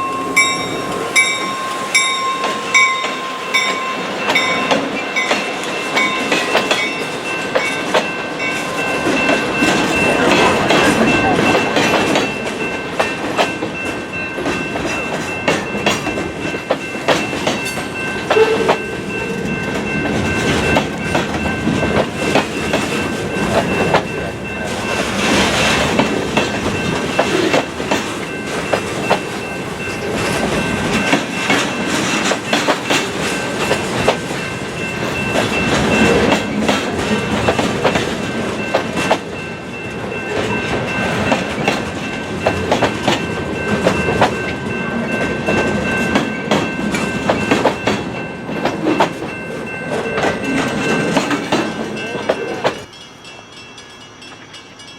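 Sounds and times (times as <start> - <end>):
freight train rumbling past: 0.0 - 54.9
train wheels clacking over rail joints: 8.8 - 18.9, 19.7 - 29.4, 30.0 - 39.4, 40.3 - 49.3, 49.9 - 52.9.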